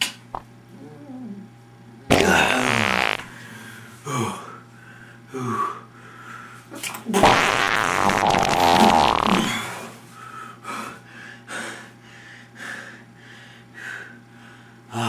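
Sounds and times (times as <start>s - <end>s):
person breathing heavily: 3.3s - 6.7s, 9.4s - 15.0s.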